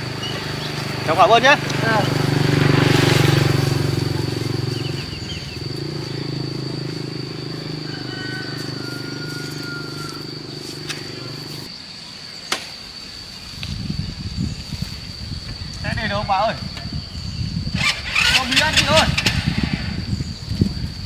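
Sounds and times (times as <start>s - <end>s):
motorbike engine idling: 0.0s - 11.6s, 17.7s - 20.4s
high insect drone: 0.0s - 21.0s.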